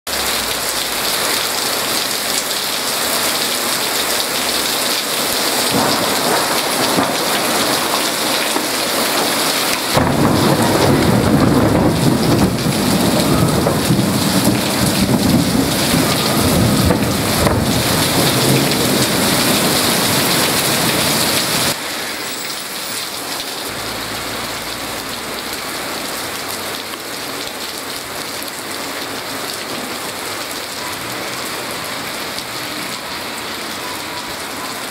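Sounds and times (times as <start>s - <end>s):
heavy rain hissing: 0.1s - 34.9s
low rolling thunder: 5.7s - 21.8s.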